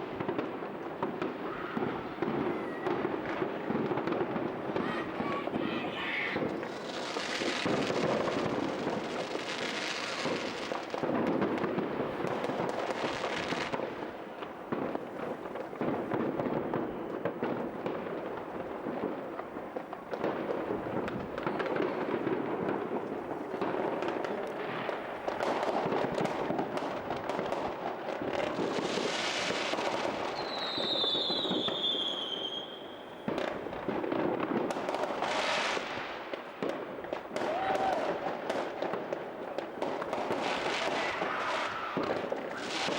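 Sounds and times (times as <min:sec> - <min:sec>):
fireworks crackling and banging: 0:00.0 - 0:42.9
falling firework whistle: 0:01.4 - 0:03.4, 0:16.4 - 0:17.6, 0:29.0 - 0:33.5, 0:37.4 - 0:38.4, 0:40.4 - 0:42.9.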